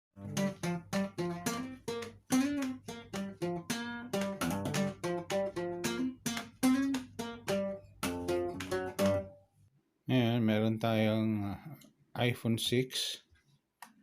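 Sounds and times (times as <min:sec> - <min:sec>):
acoustic guitar plucked: 0:00.2 - 0:09.4.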